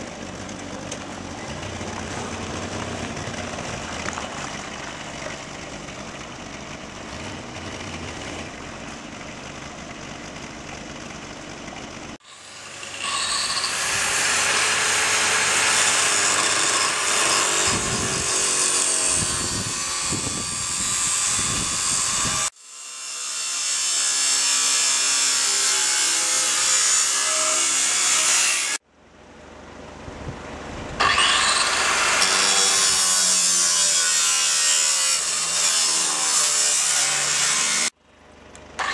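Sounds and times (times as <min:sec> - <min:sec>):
even machine sound: 0:00.0 - 0:22.4
power tool cutting steel: 0:12.2 - 0:28.8, 0:31.0 - 0:38.0.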